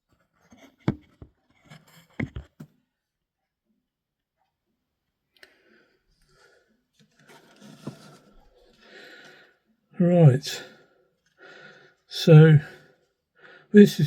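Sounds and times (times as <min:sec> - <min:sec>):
plastic radio clicks and knocks: 0:00.8 - 0:02.7.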